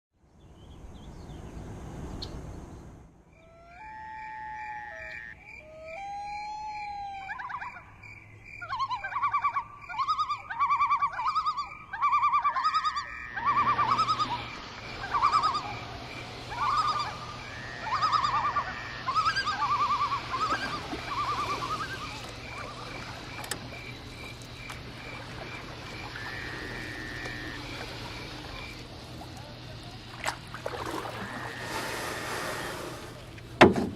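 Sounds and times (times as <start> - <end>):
short chirped calls: 8.6 - 23.5
low hum and hiss: 10.5 - 33.9
pulsing high tone: 12.6 - 15.7.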